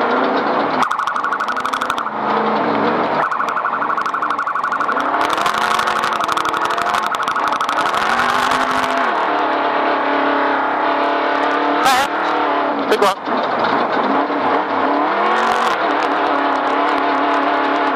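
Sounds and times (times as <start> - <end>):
engine running hard: 0.0 - 17.9
rapid rattling pulse: 0.8 - 9.1.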